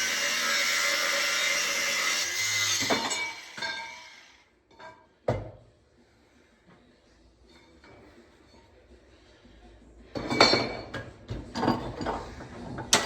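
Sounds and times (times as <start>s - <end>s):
angle grinder cutting steel: 0.0s - 4.5s.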